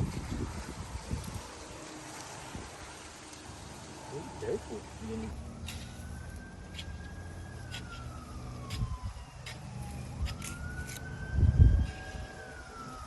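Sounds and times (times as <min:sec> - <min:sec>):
siren wailing: 0:04.2 - 0:13.0.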